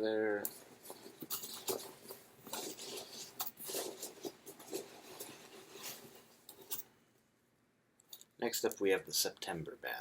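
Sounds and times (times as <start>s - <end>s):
rustling of items handled: 0.3s - 7.0s.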